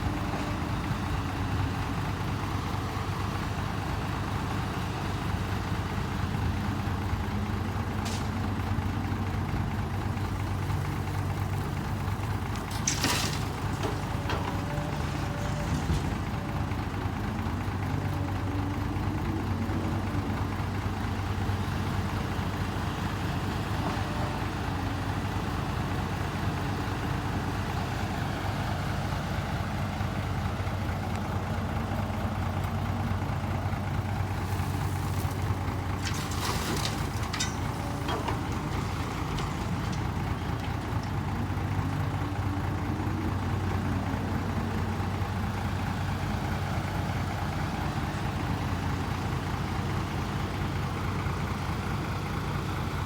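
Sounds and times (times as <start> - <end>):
diesel truck engine idling: 0.0 - 53.0.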